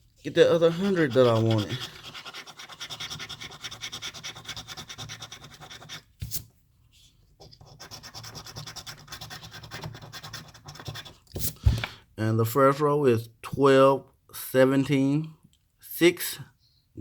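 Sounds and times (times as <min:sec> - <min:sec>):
scratching scratch-off ticket: 0:00.3 - 0:06.1.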